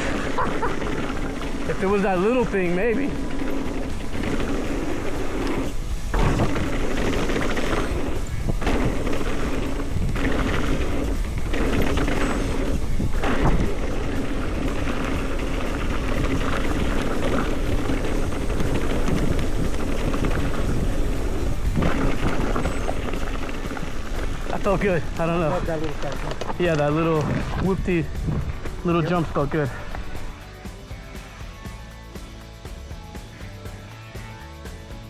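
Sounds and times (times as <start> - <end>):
bike frame rattle: 0.0 - 30.4
wind buffeting microphone: 0.0 - 30.4
bike tyres rumbling on dirt: 0.0 - 30.5.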